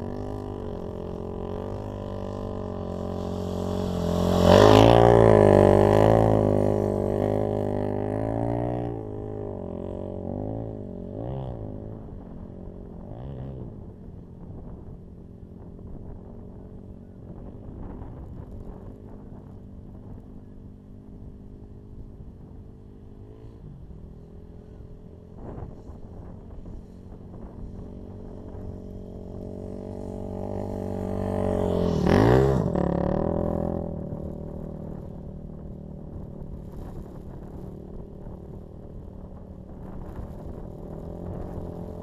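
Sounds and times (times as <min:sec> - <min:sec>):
dirt bike engine running: 0:00.0 - 0:16.4, 0:24.2 - 0:42.0.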